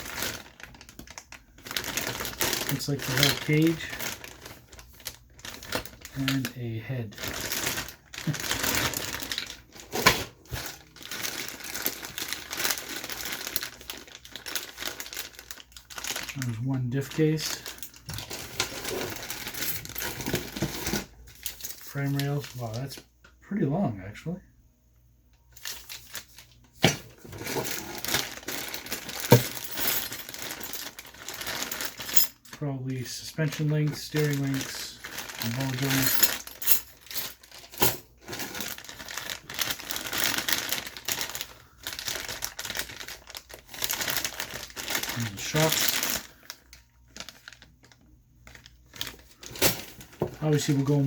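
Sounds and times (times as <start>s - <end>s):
plastic bags crinkling: 0.0s - 23.0s, 25.5s - 51.0s
hard parts clinking: 29.1s - 30.8s, 35.5s - 37.2s.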